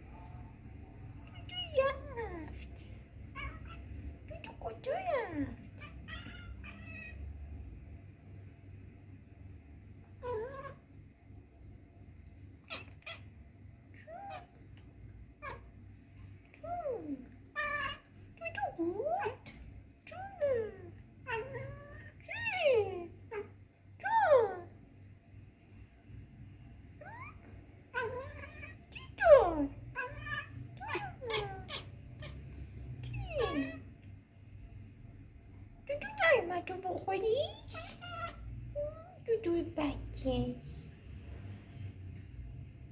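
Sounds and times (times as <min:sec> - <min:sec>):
cat meowing: 0:03.3 - 0:03.9, 0:05.8 - 0:07.2, 0:12.6 - 0:13.3, 0:14.0 - 0:14.7, 0:17.5 - 0:18.1, 0:20.1 - 0:22.5, 0:28.0 - 0:28.8, 0:29.9 - 0:32.4, 0:33.1 - 0:33.8, 0:37.7 - 0:39.1.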